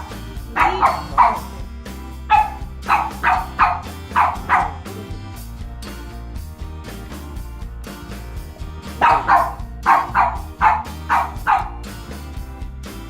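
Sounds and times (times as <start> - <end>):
dog barking: 0.0 - 1.5, 2.3 - 4.8, 9.0 - 11.8
background music: 0.0 - 13.0.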